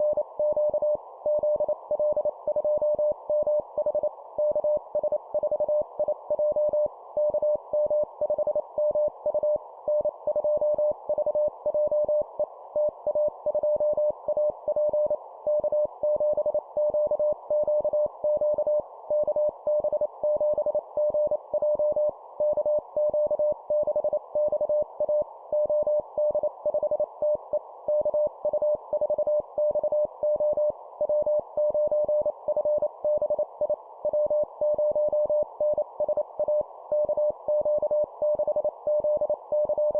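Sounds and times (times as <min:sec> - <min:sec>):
morse code beeps: 0:13.2 - 0:39.9.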